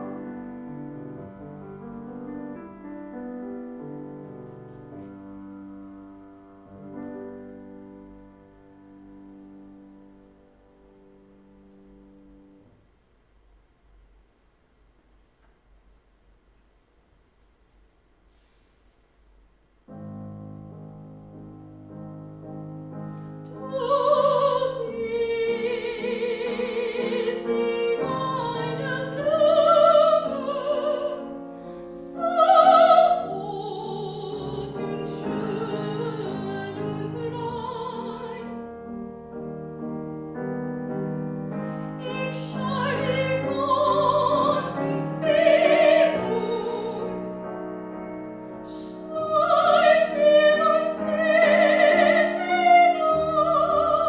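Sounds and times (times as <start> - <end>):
piano accompaniment: 0.0 - 12.9, 19.9 - 54.0
woman singing classical: 23.2 - 39.0, 40.9 - 54.0.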